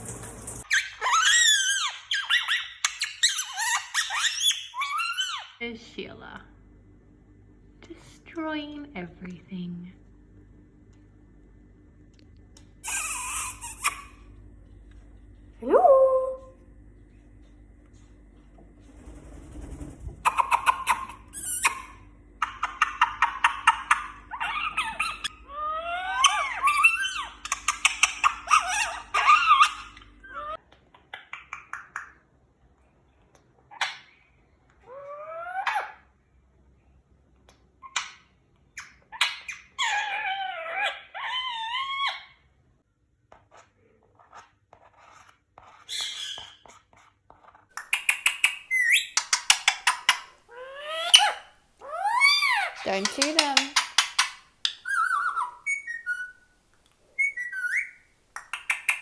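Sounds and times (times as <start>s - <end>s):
parakeet squawking and screeching: 0.0s - 5.6s, 12.8s - 14.2s, 19.4s - 30.6s, 34.9s - 36.0s, 38.8s - 42.4s, 44.2s - 56.4s, 57.1s - 59.0s
parakeet chattering: 12.8s - 14.1s, 20.2s - 25.4s, 47.8s - 56.4s, 57.2s - 59.0s
parakeet sliding calls: 12.8s - 14.1s, 19.0s - 21.9s, 47.8s - 56.4s, 57.2s - 59.0s.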